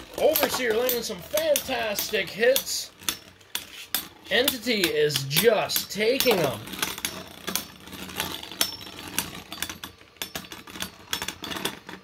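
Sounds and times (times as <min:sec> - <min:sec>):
spinning tops clashing: 0:00.0 - 0:11.8
spinning tops whirring: 0:00.0 - 0:12.0.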